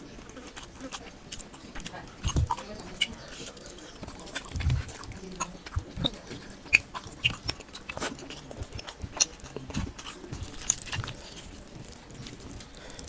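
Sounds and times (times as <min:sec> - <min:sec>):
chewing and wet mouth smacks: 0:00.0 - 0:13.0.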